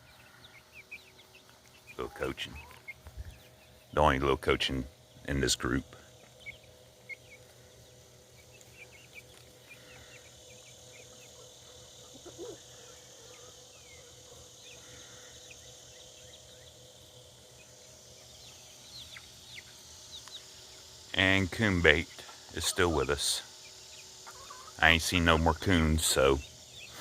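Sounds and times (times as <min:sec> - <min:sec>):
chicken clucking: 0:00.0 - 0:04.8, 0:05.6 - 0:20.9, 0:22.0 - 0:27.0
high insect drone: 0:00.0 - 0:27.0.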